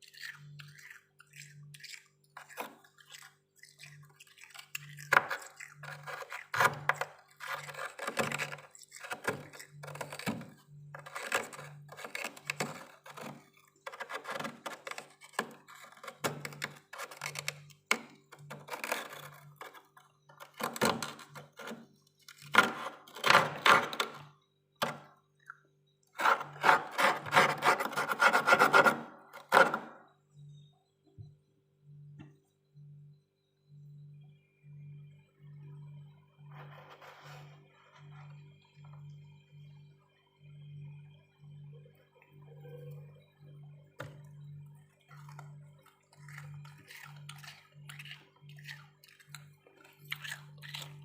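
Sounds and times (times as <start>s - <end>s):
metal spoon scraping frost: 0.0s - 24.3s, 26.2s - 30.0s, 45.2s - 51.0s.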